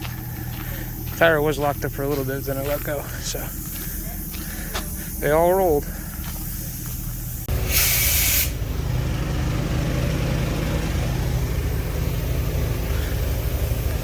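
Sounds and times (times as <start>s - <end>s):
diesel truck engine idling: 0.0s - 14.0s
air hissing burst: 3.1s - 8.7s.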